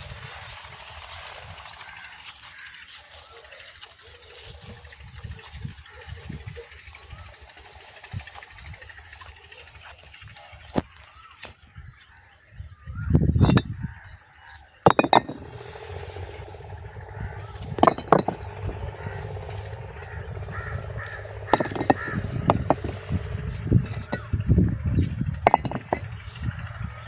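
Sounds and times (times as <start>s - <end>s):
low outdoor rumble: 14.9s - 27.0s.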